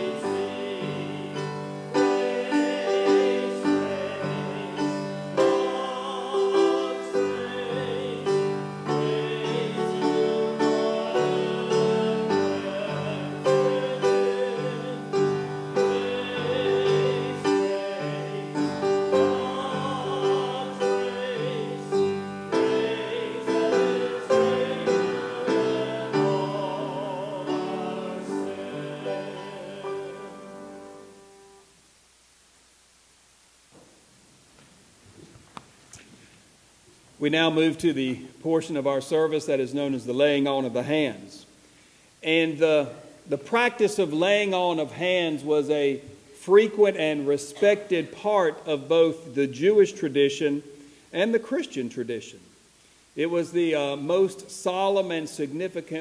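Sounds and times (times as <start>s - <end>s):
solo melody with vibrato: 0.0s - 31.6s.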